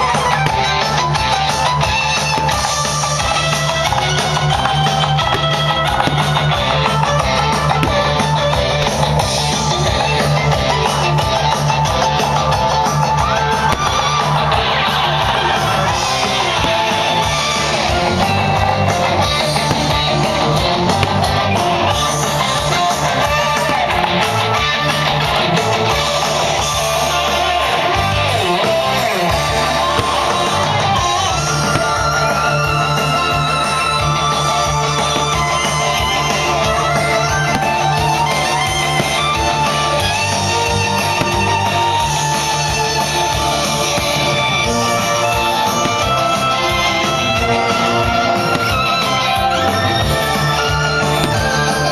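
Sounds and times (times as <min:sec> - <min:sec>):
guitar music: 0:00.0 - 0:51.9.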